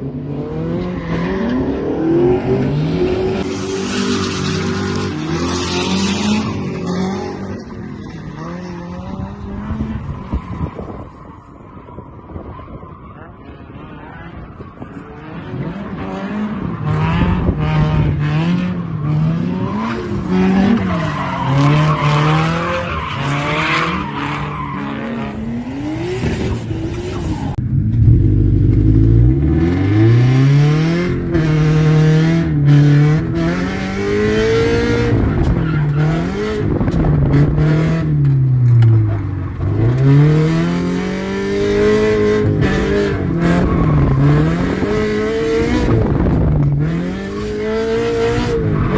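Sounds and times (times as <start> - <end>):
tires squealing: 0.7 - 17.4, 18.8 - 27.6, 29.4 - 48.9
car engine revving: 13.7 - 48.9.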